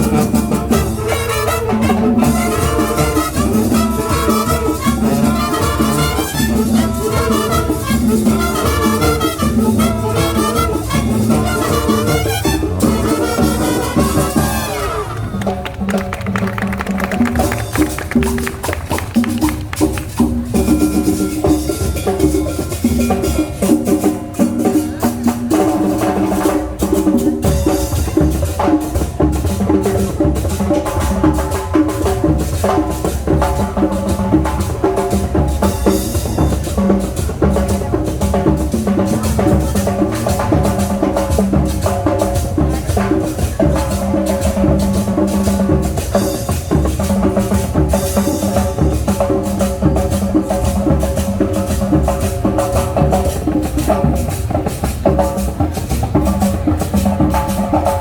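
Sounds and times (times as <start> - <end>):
drums: 0.0 - 58.0
marching band playing: 0.0 - 58.0.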